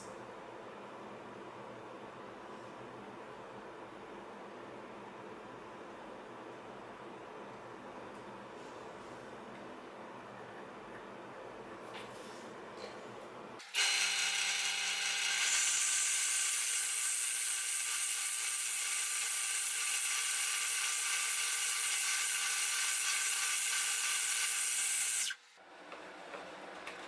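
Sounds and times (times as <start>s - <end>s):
drill press motor whine: 13.6s - 25.4s.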